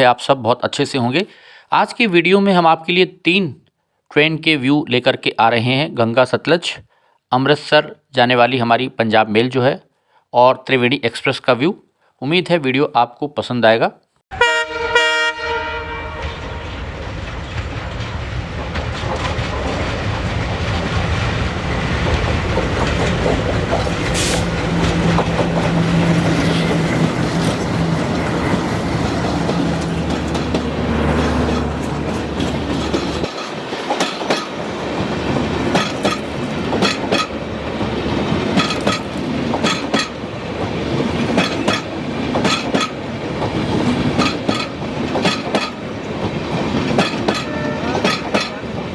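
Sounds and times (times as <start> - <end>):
train horn: 14.3 - 16.8, 47.3 - 48.3
train rumbling past: 14.4 - 48.9
train wheels clattering over rail joints: 16.2 - 48.9.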